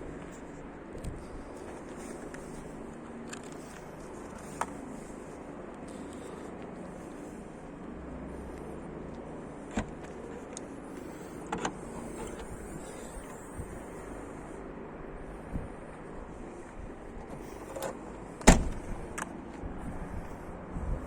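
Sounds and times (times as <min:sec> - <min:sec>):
car engine running: 0:05.9 - 0:14.8.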